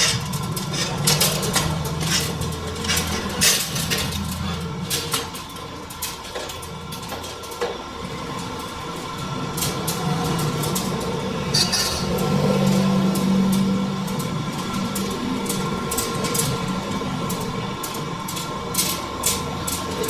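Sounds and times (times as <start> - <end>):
metallic clanks and scrapes: 0.0 - 7.4, 11.5 - 14.3
metal lathe humming: 10.4 - 17.7.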